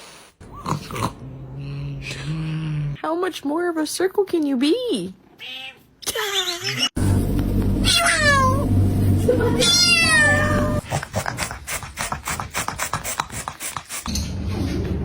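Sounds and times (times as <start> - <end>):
cat meowing: 5.4 - 5.8, 7.8 - 8.6, 9.6 - 10.8
low steady hum: 7.0 - 10.8.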